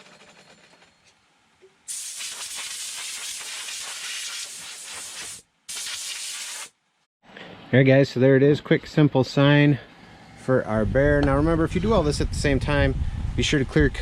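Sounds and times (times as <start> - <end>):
aerosol spray can hissing: 1.9 - 6.8.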